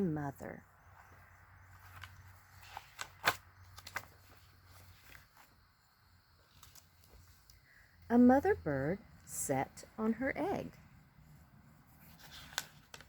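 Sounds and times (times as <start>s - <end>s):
book pages rustling: 0.9s - 5.8s, 6.4s - 7.6s, 11.8s - 13.0s
light clicks of book: 1.7s - 5.6s, 6.4s - 7.6s, 12.0s - 13.0s.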